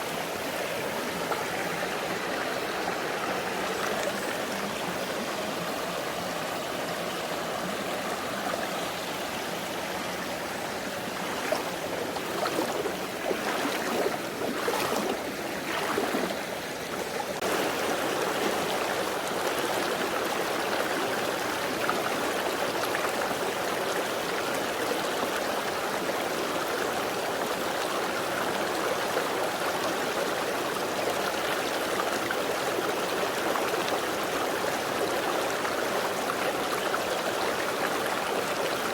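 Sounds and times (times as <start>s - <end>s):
stream flowing over rocks: 0.0s - 38.9s.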